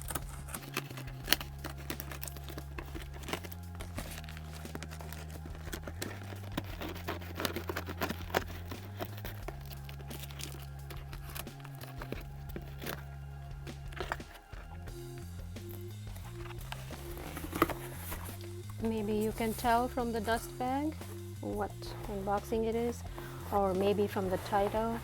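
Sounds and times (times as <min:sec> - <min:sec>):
packaging tearing: 0:00.0 - 0:14.5
cardboard box being opened: 0:00.0 - 0:19.9
crinkling rustles and clicks: 0:00.0 - 0:25.0.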